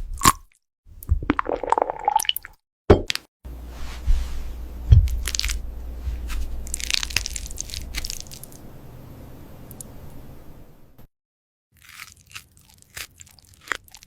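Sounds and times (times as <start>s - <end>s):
dull low thumps: 3.5s - 8.2s.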